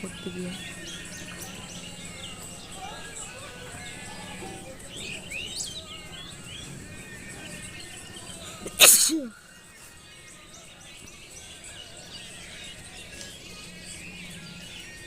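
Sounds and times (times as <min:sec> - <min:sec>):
person sneezing: 0:08.6 - 0:09.3.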